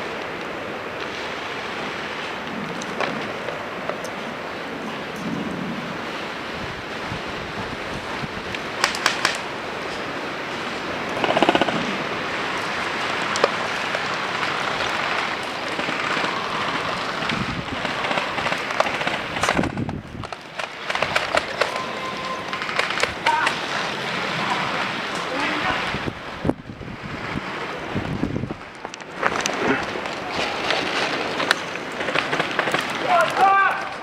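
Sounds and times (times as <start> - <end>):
wind noise on microphone: 0.0 - 32.9
rustling: 27.1 - 34.0.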